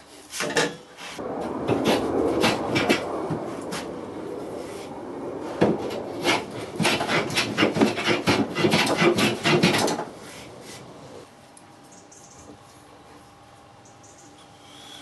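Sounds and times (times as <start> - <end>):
hand tool striking wood: 5.6 - 10.1.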